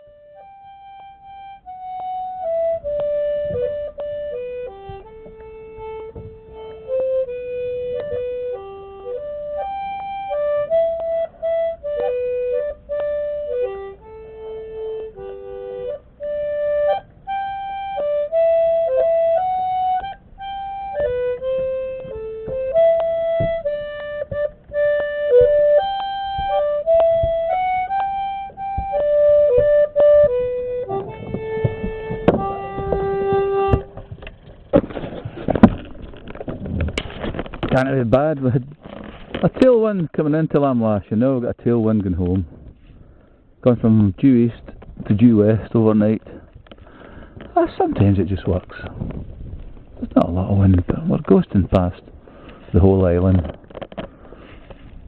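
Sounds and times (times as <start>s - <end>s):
squeezebox playing a tune: 0.0s - 34.2s.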